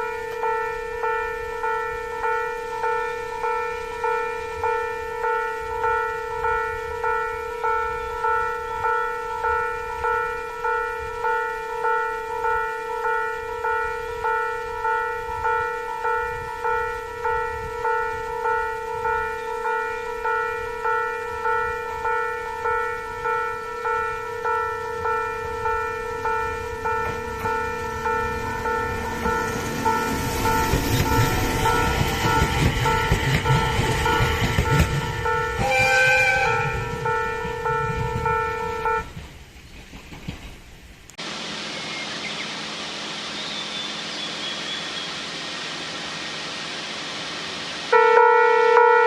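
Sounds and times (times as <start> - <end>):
level crossing alarm ringing: 0.0 - 39.1
electric train rumble: 0.0 - 49.0
outdoor background hiss: 39.1 - 49.0.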